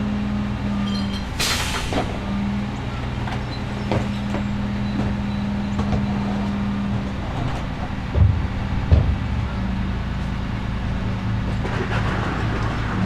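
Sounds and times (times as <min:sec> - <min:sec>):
garbage truck engine idling: 0:00.6 - 0:13.0
clanks and knocks: 0:03.2 - 0:10.4, 0:11.4 - 0:13.0
heavy thump: 0:07.4 - 0:10.0.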